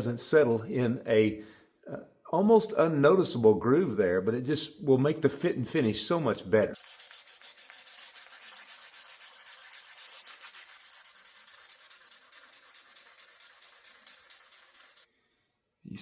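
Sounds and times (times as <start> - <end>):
sandpaper rubbing back and forth: 6.8 - 15.1.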